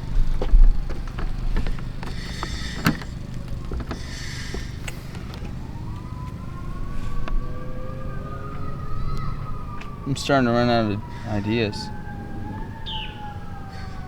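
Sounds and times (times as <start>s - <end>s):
knocks and clicks of parts handled: 0.4s - 5.6s
siren wailing: 2.8s - 14.0s.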